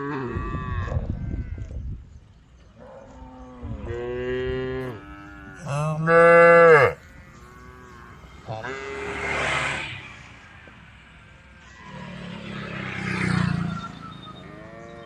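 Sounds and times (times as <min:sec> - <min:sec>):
cows mooing: 0:00.0 - 0:01.8, 0:02.8 - 0:09.3, 0:14.4 - 0:15.0.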